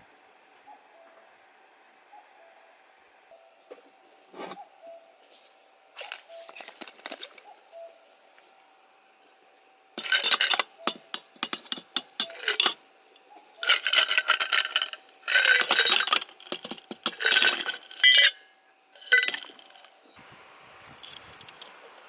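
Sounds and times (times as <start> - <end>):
dishes and utensils clinking: 10.0 - 12.8, 13.6 - 20.0.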